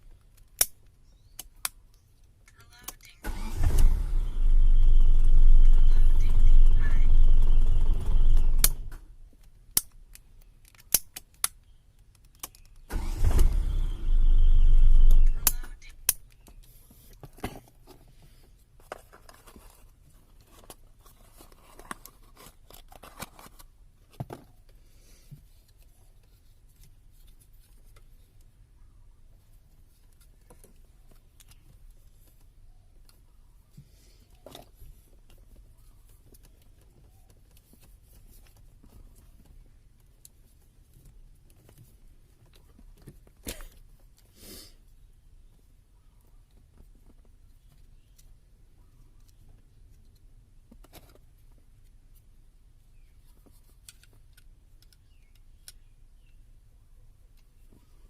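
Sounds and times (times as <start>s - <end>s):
low steady hum: 3.2s - 9.3s, 12.9s - 16.2s
handling clicks and rustles: 29.3s - 44.3s.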